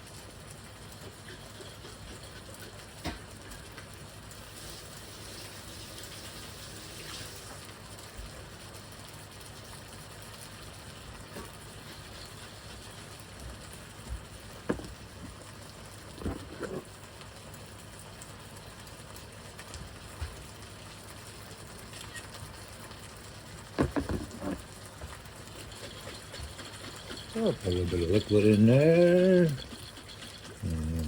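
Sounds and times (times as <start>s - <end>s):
stir-fry sizzling in a pan: 0.0s - 31.0s
knocks and clatters: 23.8s - 27.4s.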